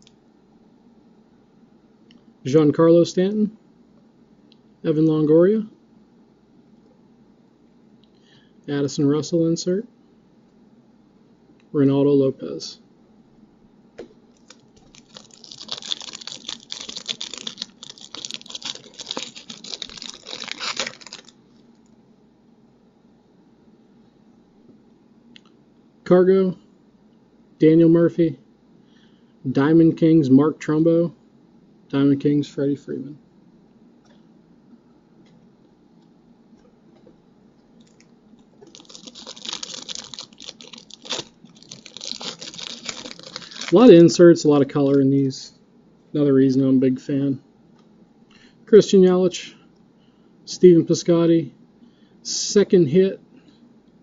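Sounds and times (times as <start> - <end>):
card pack wrapper crinkling: 14.3 - 21.4, 38.6 - 43.9
cards being handled: 14.4 - 21.4, 38.6 - 43.9.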